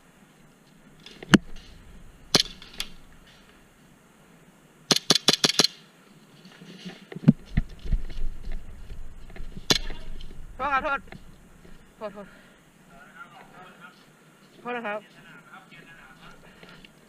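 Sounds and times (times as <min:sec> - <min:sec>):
airsoft gun shots: 0:02.3 - 0:03.0, 0:04.9 - 0:05.8, 0:09.7 - 0:10.0.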